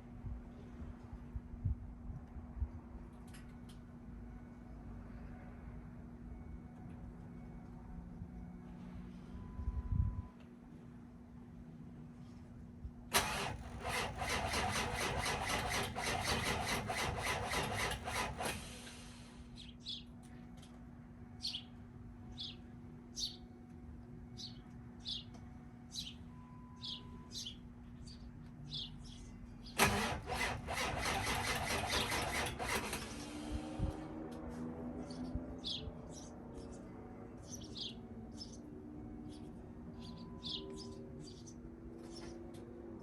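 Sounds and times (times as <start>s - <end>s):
engine cranking without starting: 13.1s - 19.1s, 29.8s - 33.7s.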